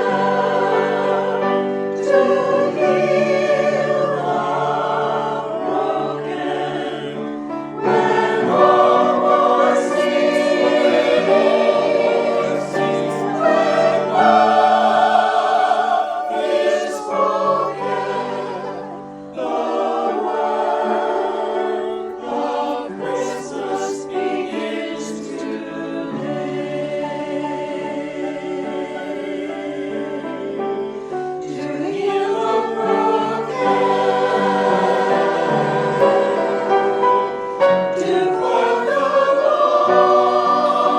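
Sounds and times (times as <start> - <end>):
instrumental accompaniment: 0.0 - 30.8
choir singing a hymn: 0.0 - 40.9.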